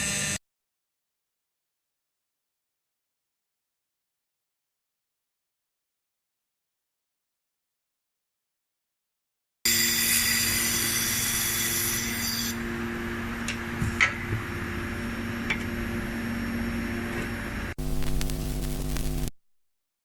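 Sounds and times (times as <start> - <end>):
high whine: 17.8 - 19.3
welding machine humming: 17.8 - 19.3.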